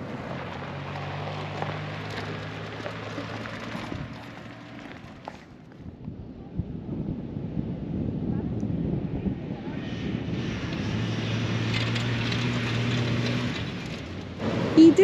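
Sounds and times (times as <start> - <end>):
vehicle engine humming: 0.0 - 5.9, 9.6 - 15.0.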